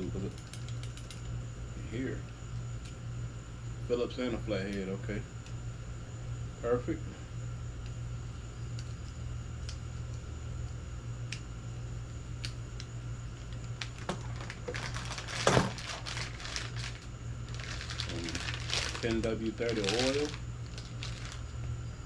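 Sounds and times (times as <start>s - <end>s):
steady low hum: 0.0s - 22.0s
plastic packaging crinkling: 13.6s - 21.7s.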